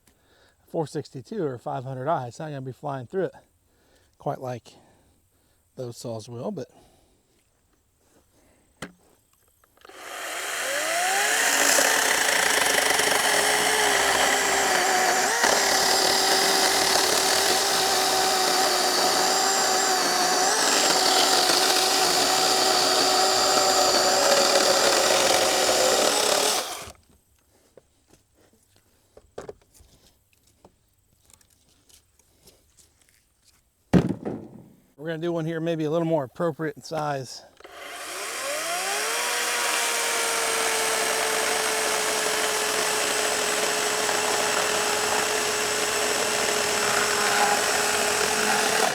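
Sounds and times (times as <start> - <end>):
battery chainsaw cutting wood: 9.8 - 27.0, 37.6 - 48.9.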